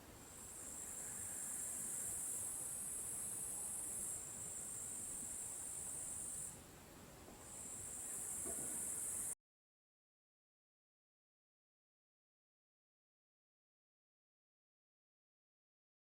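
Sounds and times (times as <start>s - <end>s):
high-pitched hiss: 0.1s - 6.6s, 7.4s - 9.4s.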